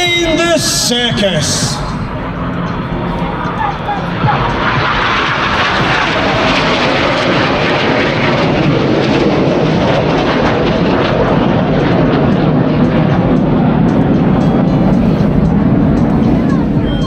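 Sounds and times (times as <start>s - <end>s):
jet aircraft roar: 0.0s - 17.0s.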